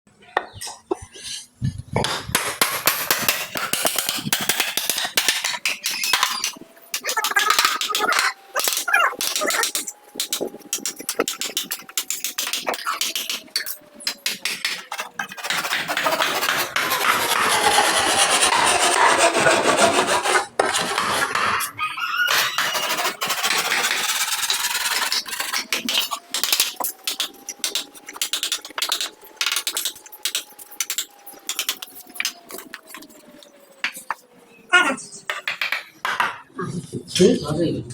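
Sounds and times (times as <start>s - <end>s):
wood clicks knocks and scraping: 1.9s - 17.7s, 22.3s - 34.3s, 35.3s - 36.5s
hand tool rasping on wood: 3.2s - 21.4s, 22.4s - 31.0s.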